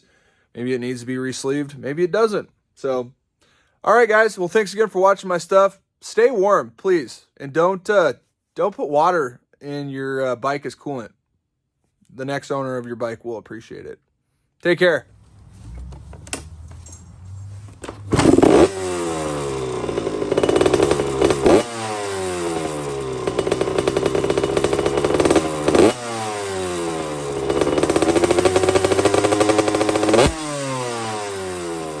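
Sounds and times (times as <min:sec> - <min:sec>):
motorcycle engine revving: 0:15.0 - 0:32.0.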